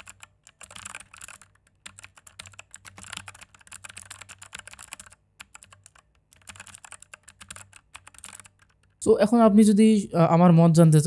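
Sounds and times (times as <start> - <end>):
mechanical keyboard key clicks: 0.0 - 9.0.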